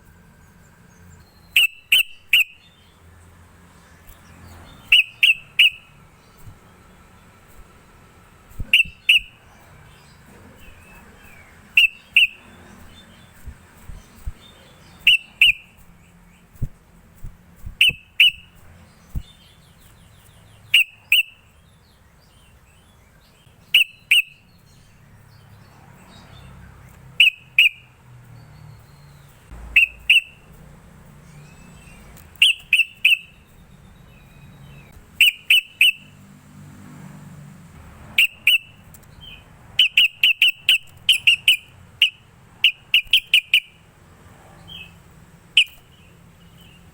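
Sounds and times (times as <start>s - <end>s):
soft bird twittering: 0.0s - 36.2s, 38.2s - 43.9s, 44.5s - 46.9s
bird whistled calls: 1.2s - 2.8s, 4.8s - 6.6s, 8.5s - 10.0s, 10.6s - 15.9s, 17.6s - 19.6s, 20.6s - 21.4s, 23.6s - 24.4s, 27.2s - 27.9s, 29.7s - 30.5s, 31.4s - 36.1s, 38.2s - 43.8s, 45.6s - 45.9s.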